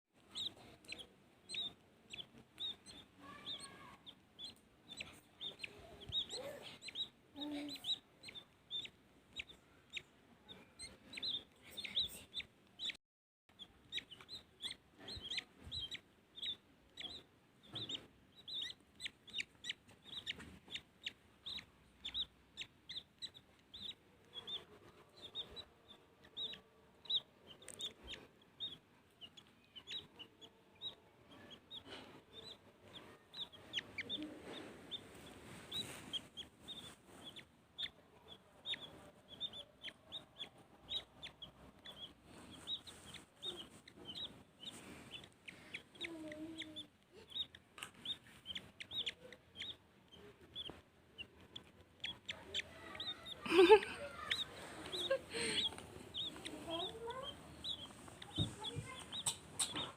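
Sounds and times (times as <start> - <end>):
baby bird cheeping: 0.2 - 59.9.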